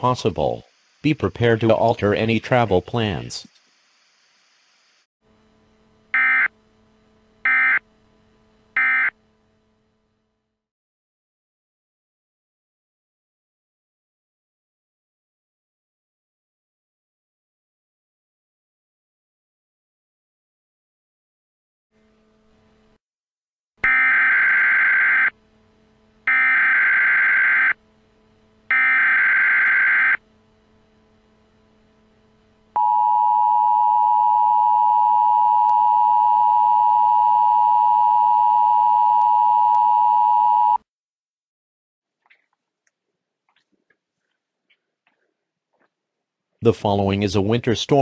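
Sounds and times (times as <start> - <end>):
steady attention tone: 4.0 - 10.2, 23.8 - 40.8
screeching digital data bursts: 28.7 - 30.2.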